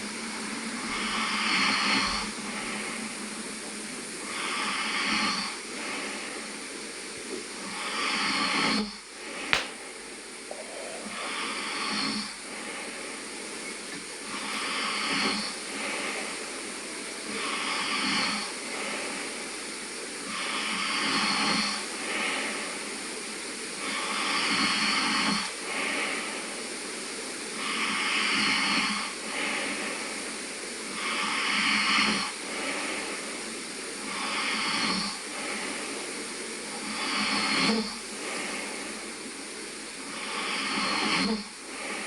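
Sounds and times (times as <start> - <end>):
man snoring: 10.5 - 12.3.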